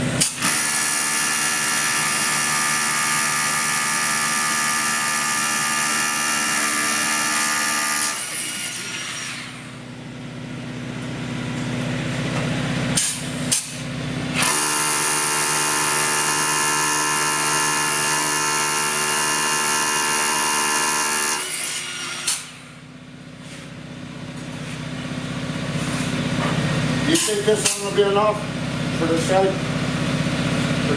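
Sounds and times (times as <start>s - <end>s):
power drill running: 0.3s - 9.8s, 14.4s - 22.8s.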